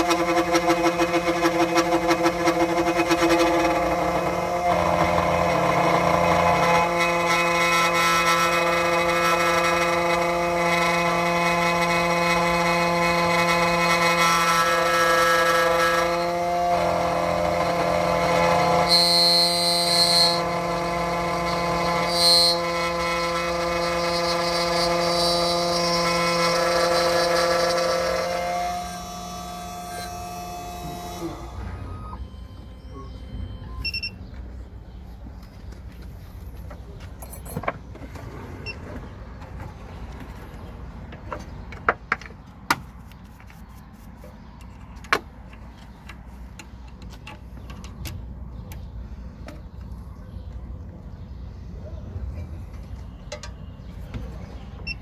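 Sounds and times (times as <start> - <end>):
high-pitched cutter scrapes on key: 0.0 - 34.1
key-cutting machine motor humming: 27.2 - 34.1.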